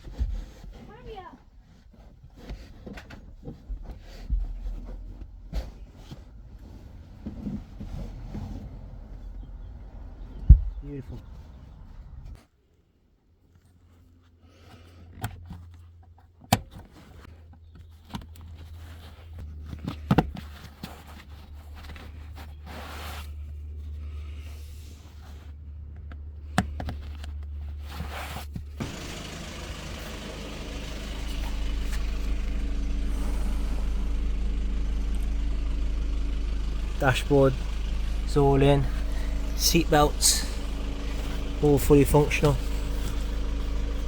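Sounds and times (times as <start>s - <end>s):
diesel engine idling: 28.8s - 44.0s
low hum: 28.8s - 44.0s.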